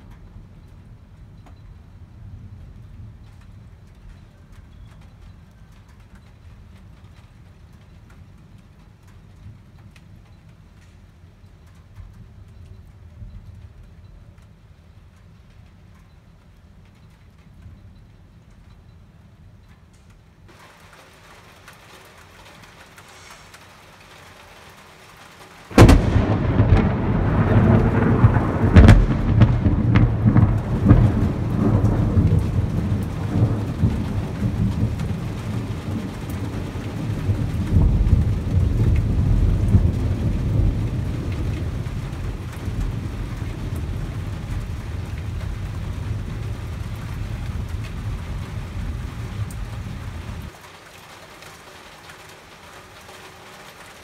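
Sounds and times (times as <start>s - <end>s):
rain falling: 0.0s - 54.0s
rolling thunder rumble: 25.7s - 50.6s
thunder cracks: 25.7s - 50.6s.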